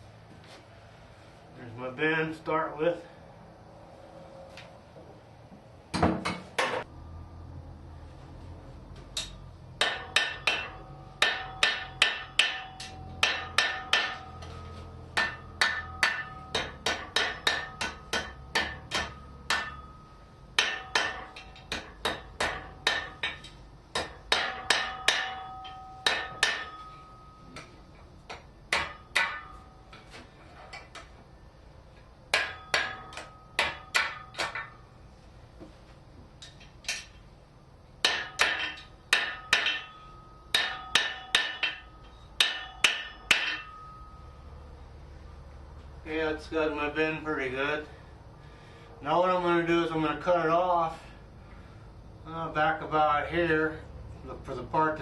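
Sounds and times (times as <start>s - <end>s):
anvil ringing: 9.2s - 27.7s, 28.7s - 30.0s, 32.3s - 34.8s, 38.0s - 44.7s
hammer striking hot metal: 9.2s - 27.7s, 28.3s - 29.8s, 32.3s - 34.8s, 38.0s - 44.3s.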